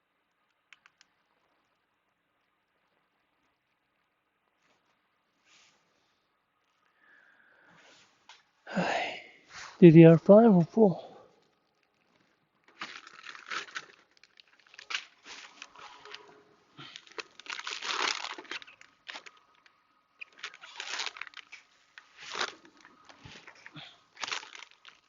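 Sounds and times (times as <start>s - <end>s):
plastic packaging crinkling: 11.4s - 25.0s.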